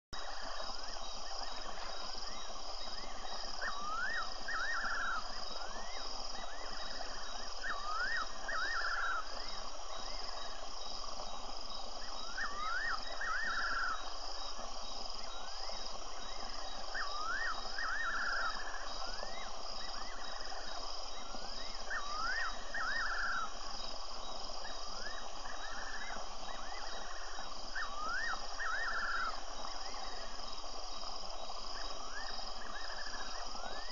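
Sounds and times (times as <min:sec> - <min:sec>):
night bird whistling: 0:00.2 - 0:09.4, 0:12.0 - 0:14.6, 0:15.2 - 0:23.6, 0:24.6 - 0:30.3
crickets and insects chirping: 0:00.2 - 0:33.9.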